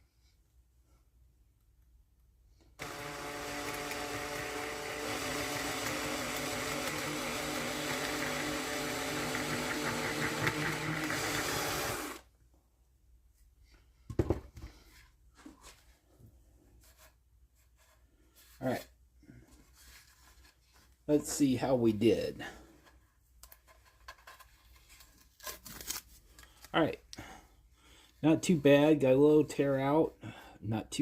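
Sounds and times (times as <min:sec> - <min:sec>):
electric power tool cutting wood: 0:02.8 - 0:12.2.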